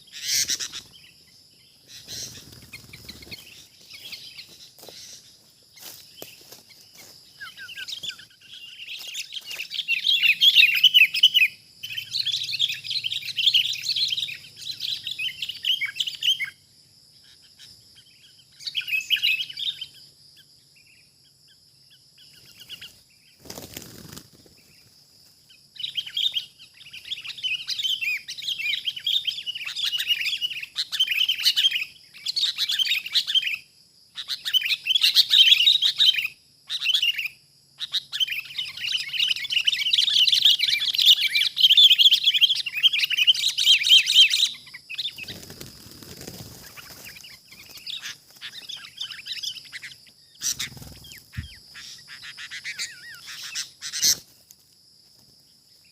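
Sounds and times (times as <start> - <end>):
bulbuls chattering calls: 1.8 - 11.2, 46.4 - 54.2.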